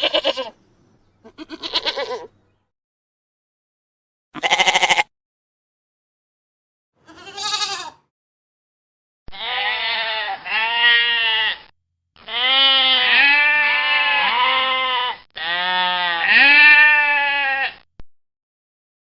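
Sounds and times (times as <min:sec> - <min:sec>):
goat bleating: 0:00.0 - 0:00.6, 0:01.2 - 0:02.4, 0:04.4 - 0:05.1, 0:07.0 - 0:08.1, 0:09.3 - 0:17.9.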